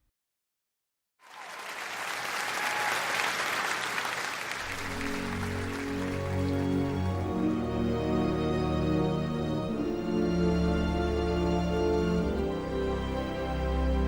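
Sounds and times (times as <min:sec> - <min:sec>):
audience applauding: 0:01.2 - 0:07.3.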